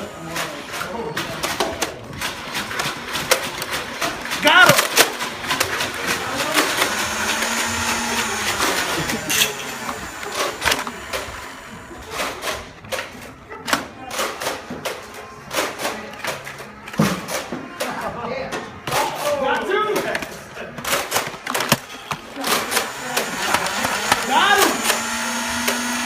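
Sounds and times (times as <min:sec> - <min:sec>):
blaster motors whirring: 0:06.5 - 0:12.0, 0:22.5 - 0:26.0.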